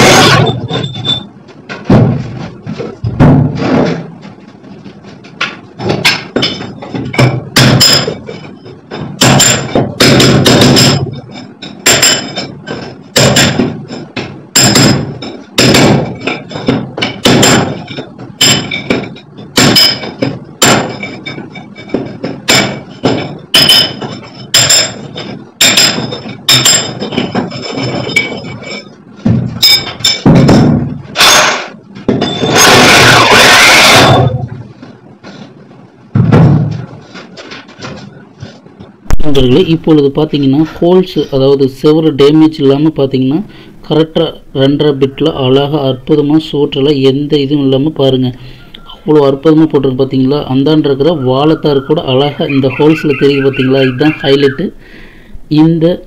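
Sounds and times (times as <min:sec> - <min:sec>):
hammer blows with metallic ring: 0:06.0 - 0:34.5.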